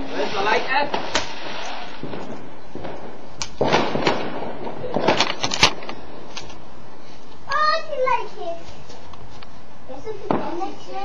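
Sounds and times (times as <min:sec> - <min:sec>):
firework hiss: 0:00.0 - 0:05.2
firework pops and crackles: 0:00.0 - 0:06.6, 0:10.3 - 0:10.7.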